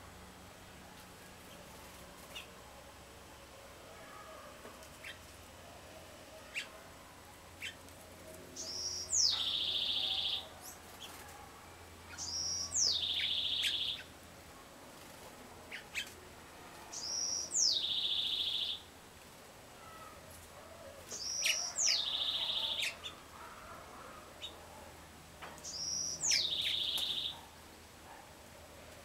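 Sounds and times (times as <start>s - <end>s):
songbird singing trilled phrase: 8.6s - 10.4s, 12.2s - 14.1s, 17.0s - 18.8s, 25.7s - 27.4s.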